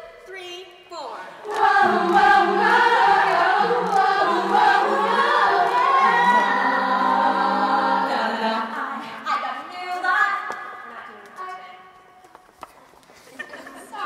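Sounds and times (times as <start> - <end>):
women singing a cappella: 1.0 - 11.8.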